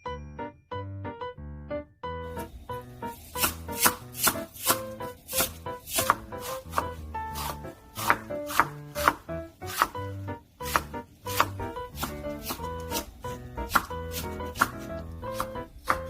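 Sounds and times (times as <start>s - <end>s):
background music: 0.0s - 16.0s
knife chopping on cutting board: 3.2s - 16.0s.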